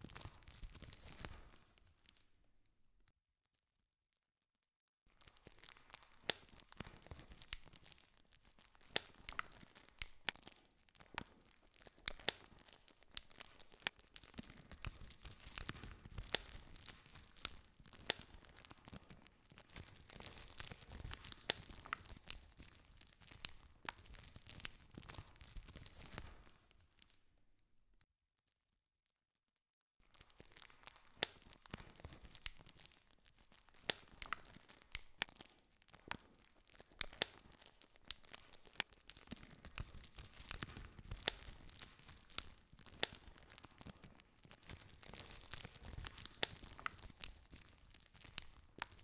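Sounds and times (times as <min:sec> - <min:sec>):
campfire crackling: 0:11.2 - 0:19.0, 0:19.8 - 0:26.6, 0:30.4 - 0:49.0.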